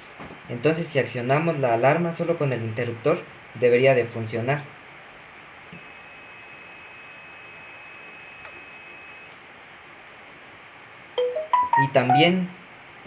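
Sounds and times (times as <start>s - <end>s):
high-pitched buzzer tone: 5.8s - 9.3s.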